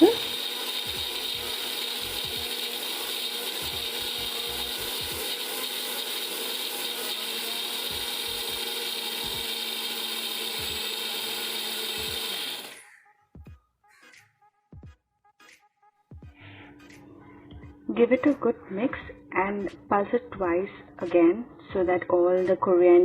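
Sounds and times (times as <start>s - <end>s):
mixer grinder running: 0.0s - 13.0s.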